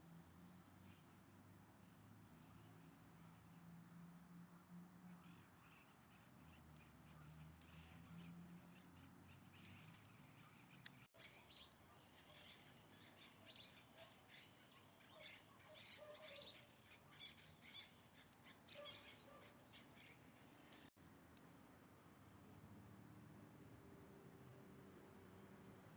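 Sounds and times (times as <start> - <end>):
small birds chirping: 5.2 - 21.0.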